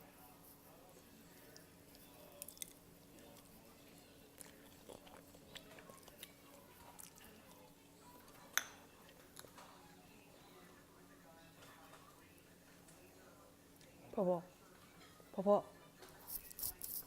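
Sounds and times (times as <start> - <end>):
person chewing noodles: 4.3 - 7.6.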